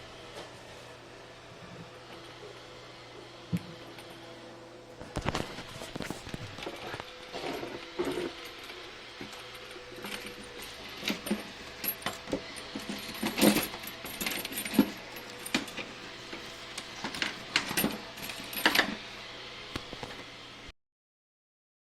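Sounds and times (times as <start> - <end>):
objects clicking and clinking: 5.0 - 19.0.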